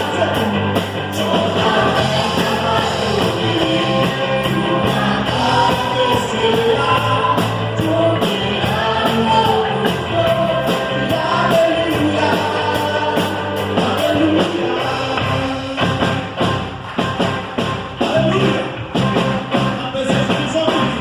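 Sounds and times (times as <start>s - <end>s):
person singing: 0.0s - 16.0s
drum kit beat: 0.0s - 21.0s
worship band playing: 0.0s - 21.0s.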